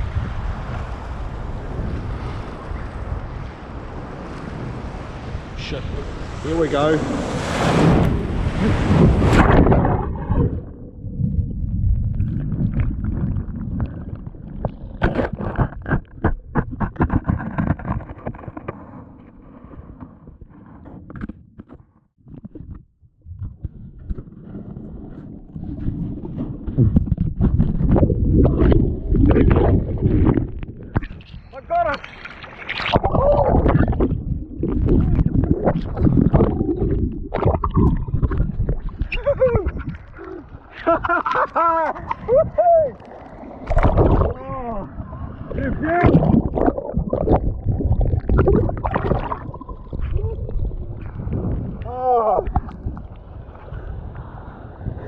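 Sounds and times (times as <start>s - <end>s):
muffled churning surf underwater: 0.0s - 55.0s
bubbling chirps: 32.7s - 39.2s, 46.1s - 50.6s.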